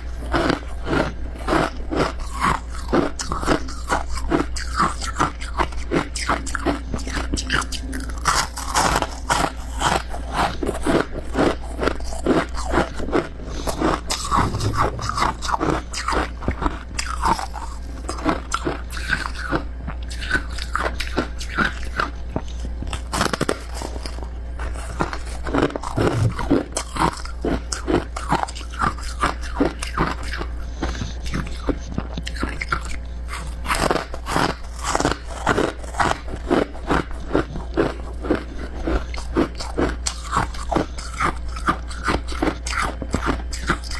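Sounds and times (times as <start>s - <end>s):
person chewing ice crunches: 0.0s - 14.7s, 16.9s - 43.9s
steady low hum: 13.3s - 27.7s.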